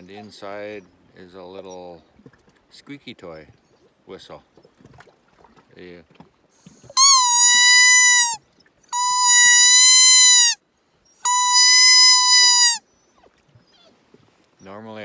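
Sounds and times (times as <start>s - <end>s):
deer call bleats: 7.0s - 8.4s, 9.0s - 10.6s, 11.3s - 12.8s.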